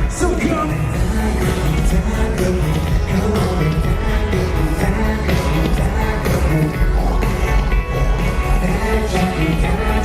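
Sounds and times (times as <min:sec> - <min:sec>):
loud pop music with bass beat: 0:00.0 - 0:10.0.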